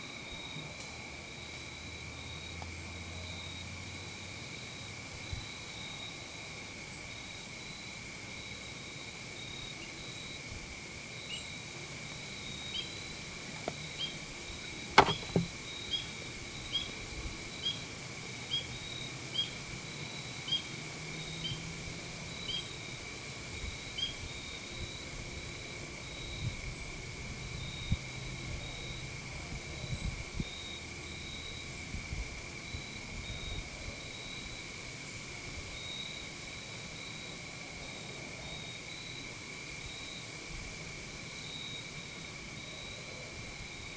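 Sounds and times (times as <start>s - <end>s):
insects chirring: 0.0s - 43.9s
small knock: 15.0s - 15.5s.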